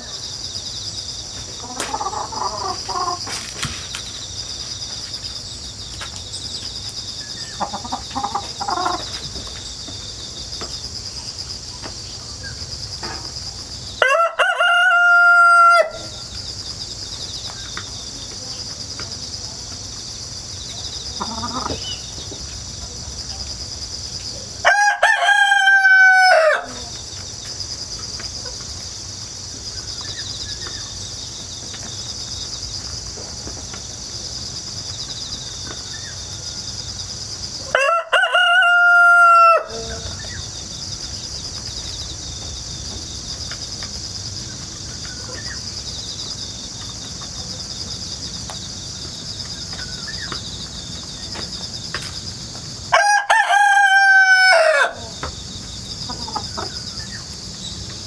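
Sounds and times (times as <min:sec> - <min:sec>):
insects chirping: 0:00.0 - 0:58.0
rooster crowing: 0:14.0 - 0:16.3, 0:24.6 - 0:26.9, 0:37.7 - 0:40.2, 0:52.9 - 0:55.3.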